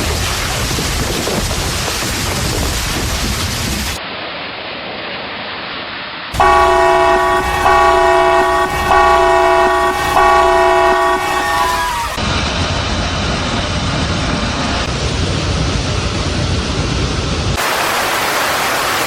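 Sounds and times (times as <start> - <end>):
steady rain-like noise: 0.0 - 19.0
multi-chime air horn blasts: 6.4 - 12.2.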